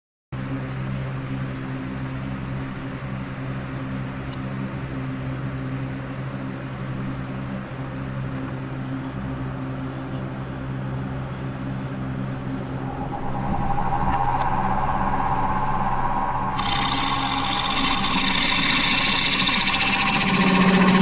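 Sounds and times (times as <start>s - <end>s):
wood lathe motor hum: 14.2s - 21.0s.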